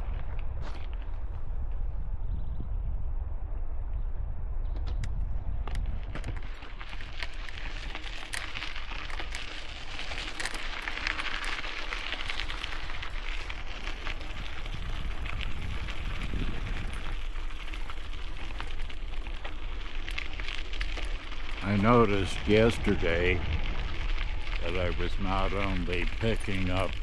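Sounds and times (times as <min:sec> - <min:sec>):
bicycle tyres rolling over gravel: 0:00.0 - 0:01.9, 0:05.6 - 0:27.0
wind on microphone: 0:00.0 - 0:09.4, 0:14.0 - 0:27.0.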